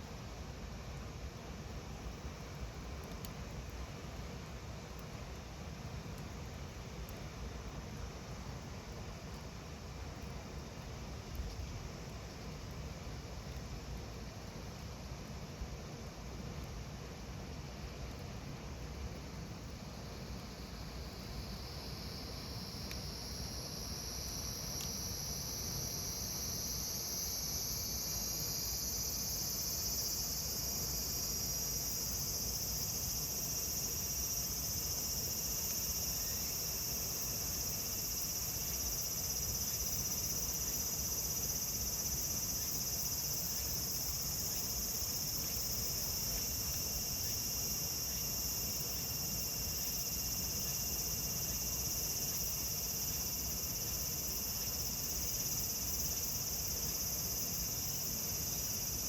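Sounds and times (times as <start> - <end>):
cicadas singing: 20.0 - 59.0.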